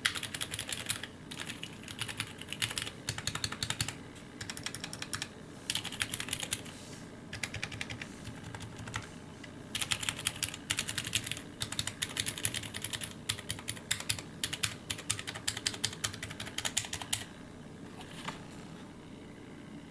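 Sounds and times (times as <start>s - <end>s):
typing on mechanical keyboard: 0.0s - 6.6s, 7.3s - 9.1s, 9.8s - 17.3s.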